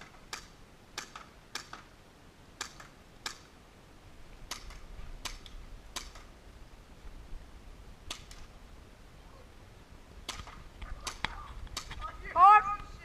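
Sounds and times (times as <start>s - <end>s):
airsoft gun shots: 4.5s - 6.3s, 10.2s - 12.1s.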